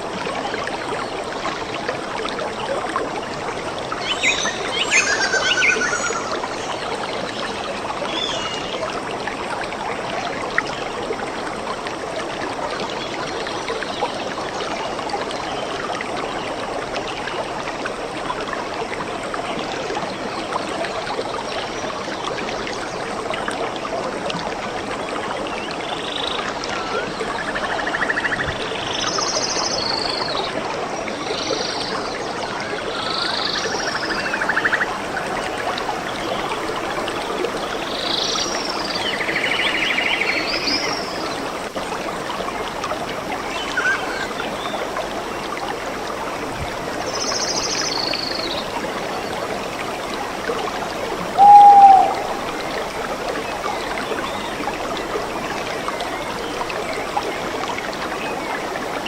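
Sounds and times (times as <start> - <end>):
stream running: 0.0 - 59.0
animal calls and trills: 51.3 - 52.7.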